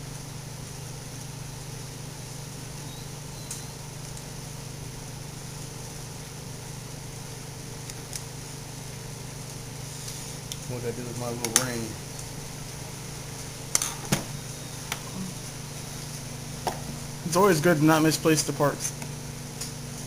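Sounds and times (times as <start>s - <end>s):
low background hum: 0.0s - 20.0s.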